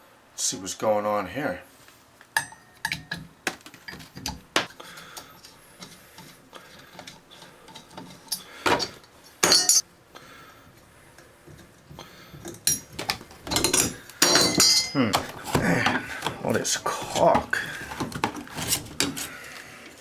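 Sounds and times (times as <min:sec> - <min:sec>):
tools clinking on tile: 0:02.4 - 0:03.2, 0:05.0 - 0:09.8, 0:12.3 - 0:16.0.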